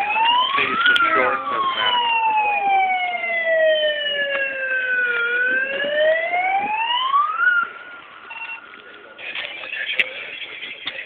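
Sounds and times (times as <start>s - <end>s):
siren wailing: 0.0s - 8.6s.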